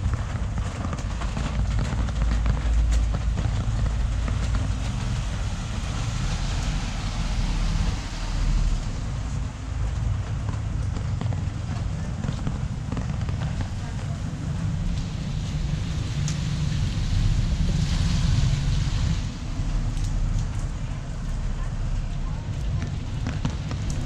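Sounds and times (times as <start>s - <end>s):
steady low rumble: 0.0s - 24.0s
rain drop ticks: 0.1s - 24.0s
falling rain hiss: 3.7s - 10.0s, 13.4s - 24.0s.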